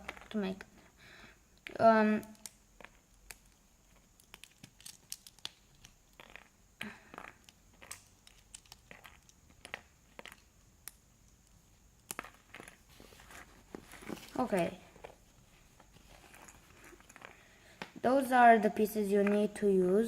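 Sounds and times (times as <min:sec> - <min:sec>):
plastic pieces clicking: 0:00.0 - 0:00.7, 0:01.6 - 0:12.8.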